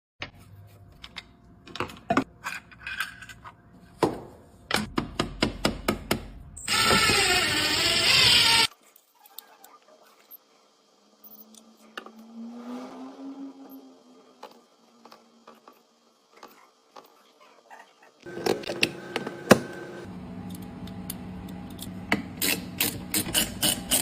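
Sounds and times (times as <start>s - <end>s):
power tool running: 6.6s - 8.7s.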